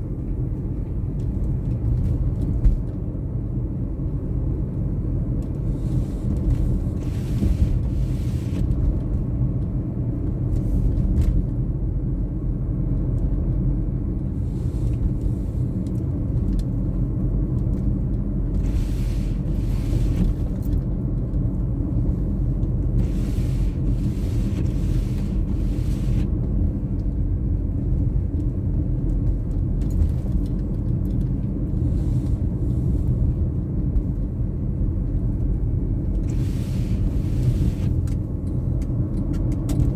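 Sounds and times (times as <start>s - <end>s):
car road and engine rumble: 0.0s - 39.9s
tire hiss on snow: 7.0s - 8.7s, 18.6s - 20.4s, 23.0s - 26.3s, 36.3s - 38.0s.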